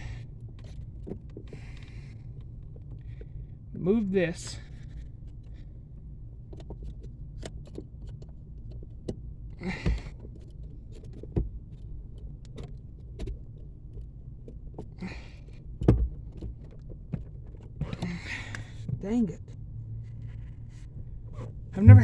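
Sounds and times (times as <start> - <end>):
steady low hum: 19.8 - 22.0.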